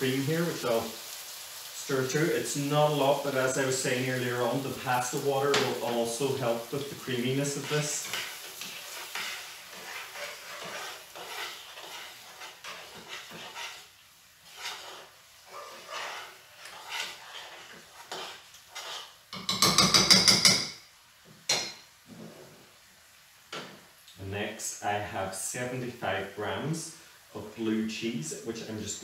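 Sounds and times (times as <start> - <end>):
utensil scraping a frying pan: 1.8 - 20.7.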